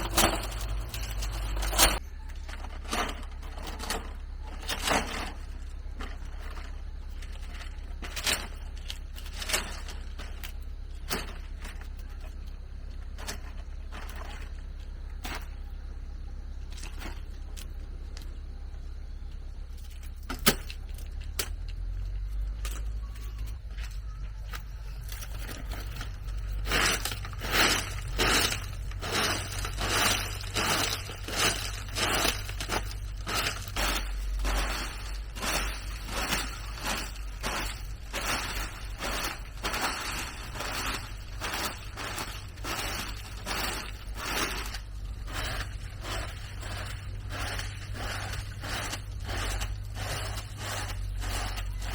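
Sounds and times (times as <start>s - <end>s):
scraping strokes: 0.0s - 2.0s, 24.8s - 51.9s
steady low hum: 0.0s - 51.9s.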